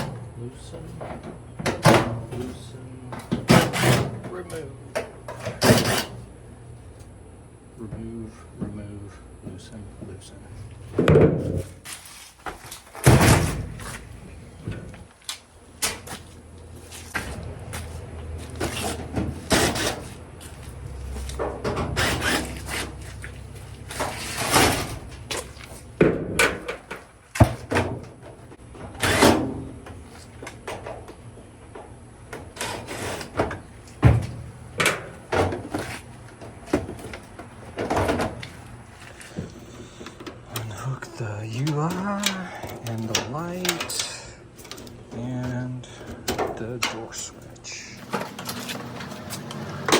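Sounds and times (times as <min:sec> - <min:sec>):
metal panels knocking and scraping: 0:01.0 - 0:06.2, 0:17.1 - 0:31.2, 0:31.8 - 0:38.6.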